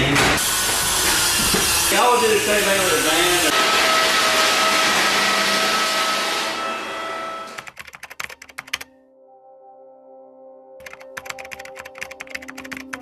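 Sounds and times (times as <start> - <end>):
floor sanding machine whine: 0.4 - 7.7
rapid typing-like clicks: 7.6 - 8.9, 10.8 - 13.0
soft sustained music notes: 9.0 - 13.0.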